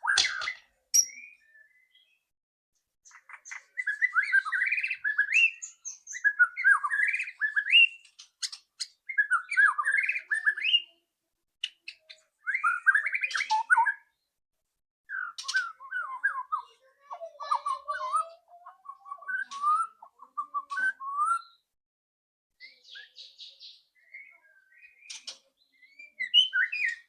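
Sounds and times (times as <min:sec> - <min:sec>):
bird singing whistled phrases: 0:00.0 - 0:02.2, 0:03.5 - 0:08.1, 0:08.8 - 0:10.9, 0:11.9 - 0:14.1, 0:15.1 - 0:16.8, 0:17.4 - 0:21.6, 0:22.6 - 0:27.0
sharp bird clicks: 0:00.1 - 0:01.3, 0:25.0 - 0:25.5.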